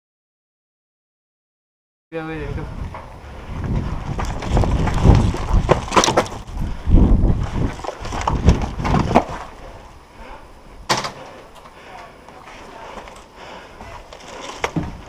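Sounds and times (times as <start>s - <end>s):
running footsteps on ground: 2.8s - 9.5s.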